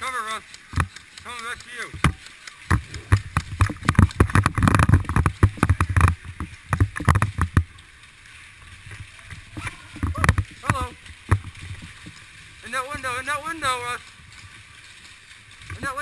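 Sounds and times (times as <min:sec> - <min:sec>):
camera gear knocking and rattling: 0:02.0 - 0:07.7.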